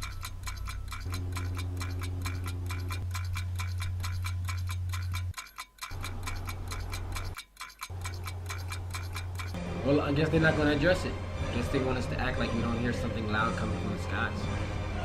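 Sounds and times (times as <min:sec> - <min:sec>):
clock ticking: 0:00.0 - 0:09.6.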